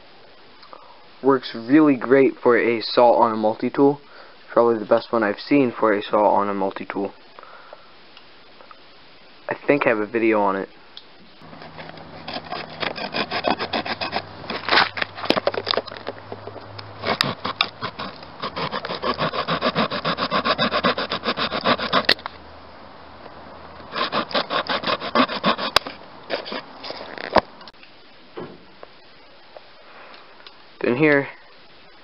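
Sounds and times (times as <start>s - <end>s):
small saw sawing: 11.4s - 15.0s, 17.0s - 22.2s, 23.9s - 27.2s.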